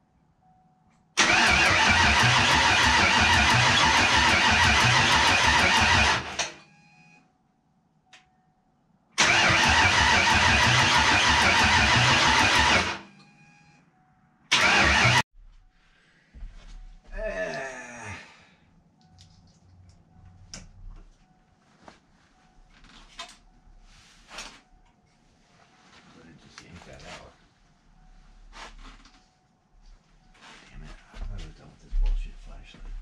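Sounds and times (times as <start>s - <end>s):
car engine cranking on starter: 1.2s - 6.6s, 9.2s - 13.1s, 14.5s - 15.2s.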